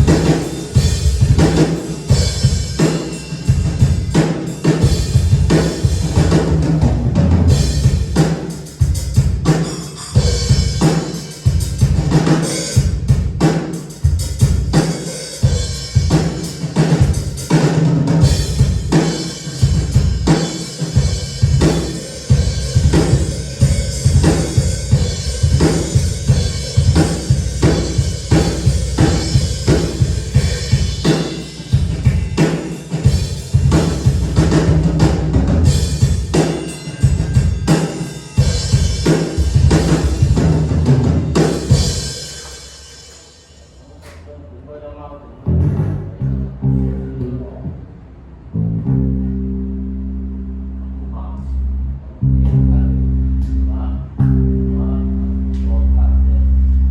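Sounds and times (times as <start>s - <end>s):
drum kit playing a beat: 0.0s - 44.2s, 45.5s - 46.4s, 52.3s - 54.7s.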